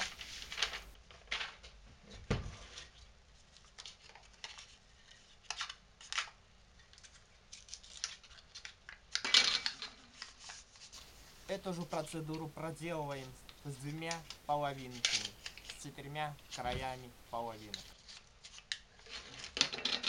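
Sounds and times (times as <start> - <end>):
paper rustling: 0.0 - 1.7, 2.6 - 6.3, 6.9 - 8.8, 10.1 - 19.8
small clicks and rustles: 0.0 - 11.5, 13.1 - 15.9.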